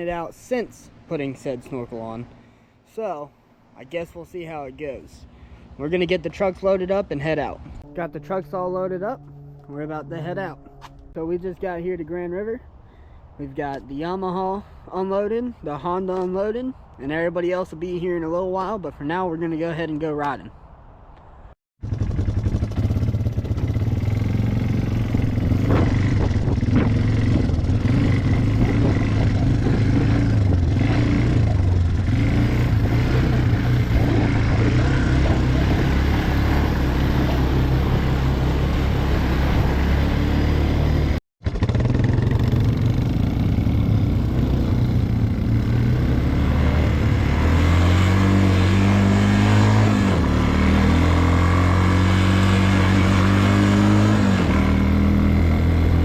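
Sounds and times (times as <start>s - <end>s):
atv engine running: 21.8s - 56.0s.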